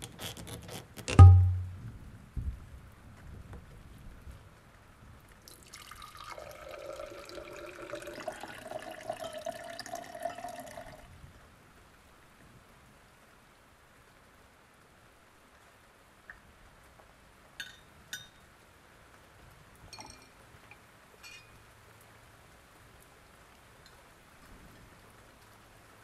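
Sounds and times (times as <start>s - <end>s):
tap water running into sink: 5.5s - 11.0s.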